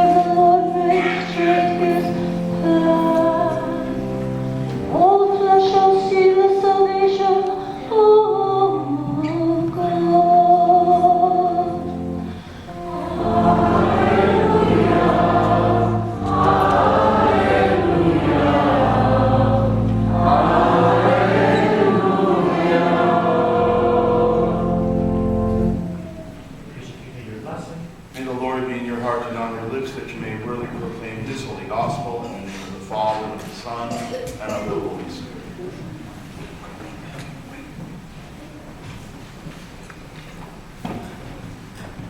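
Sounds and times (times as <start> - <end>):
church choir singing: 0.0 - 26.6.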